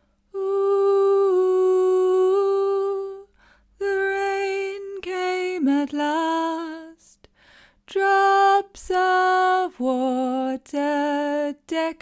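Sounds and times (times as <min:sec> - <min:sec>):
woman singing long notes: 0:00.3 - 0:07.0
singer breathing in: 0:03.3 - 0:03.8, 0:07.3 - 0:07.8.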